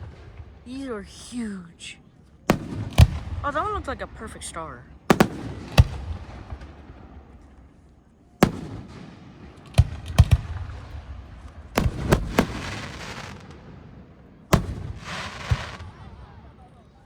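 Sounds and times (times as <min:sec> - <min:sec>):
firework shells bursting: 0:05.1 - 0:06.0, 0:11.8 - 0:13.6, 0:14.5 - 0:15.8
firework crackling hiss: 0:11.8 - 0:13.6, 0:14.6 - 0:15.9.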